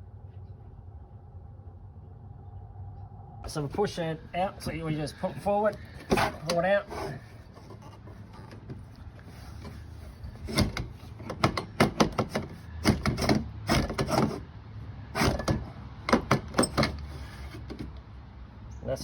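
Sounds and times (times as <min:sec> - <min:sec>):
metal clunks and rattles: 0:09.6 - 0:14.4, 0:15.2 - 0:17.9.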